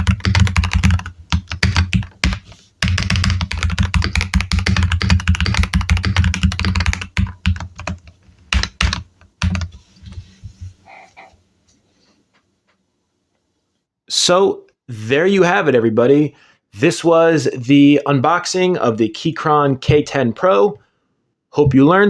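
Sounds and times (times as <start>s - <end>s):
fast typing on mechanical keyboard: 0.0s - 9.7s.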